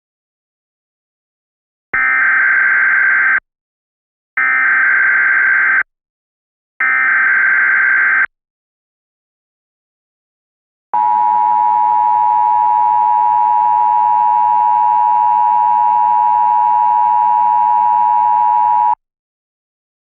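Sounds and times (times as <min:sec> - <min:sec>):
two-tone alert alarm: 0:11.0 - 0:19.0.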